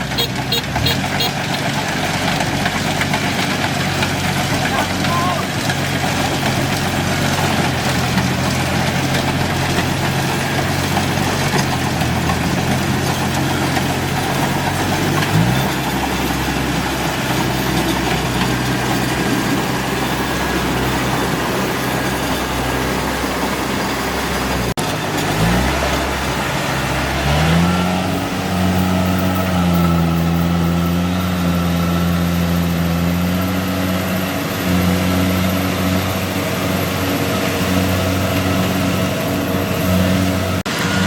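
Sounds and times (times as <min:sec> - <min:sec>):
combine harvester diesel engine: 0:00.0 - 0:41.0.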